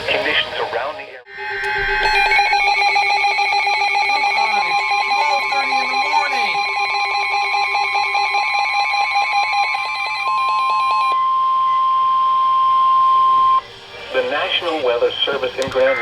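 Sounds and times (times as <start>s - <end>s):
stuttering data bursts: 0.0s - 11.1s
steady high alert tone: 0.0s - 15.2s
overlapping alert tones: 1.6s - 11.1s.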